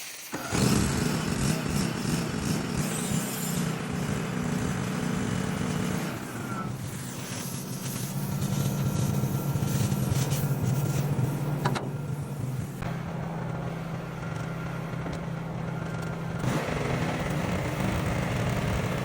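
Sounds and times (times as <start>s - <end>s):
metal cutting hiss and crackle: 0.0s - 4.3s, 6.2s - 12.8s
small engine running: 0.3s - 19.0s.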